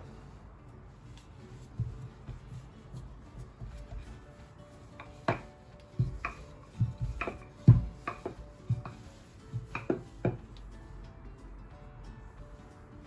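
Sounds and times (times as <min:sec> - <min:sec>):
faint background music: 0:00.0 - 0:13.0
rolling pin knocking on work surface: 0:03.4 - 0:10.5.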